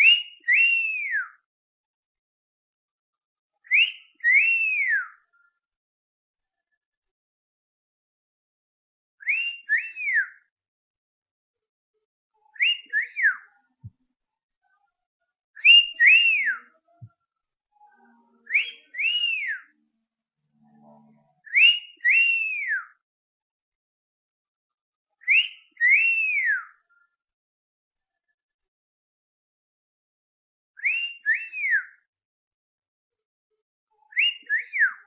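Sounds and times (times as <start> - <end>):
two-note wolf whistle: 17.9 - 19.7, 20.6 - 23.0.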